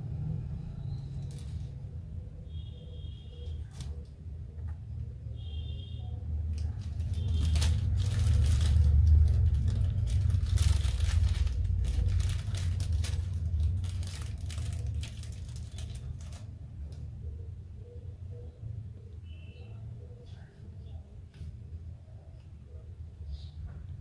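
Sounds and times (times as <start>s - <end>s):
hands rummaging through packaging: 6.6s - 16.5s
low rumble: 6.8s - 16.4s.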